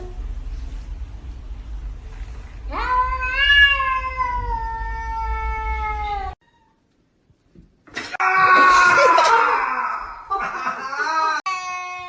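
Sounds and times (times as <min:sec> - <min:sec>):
cat yowling: 0:02.7 - 0:06.8.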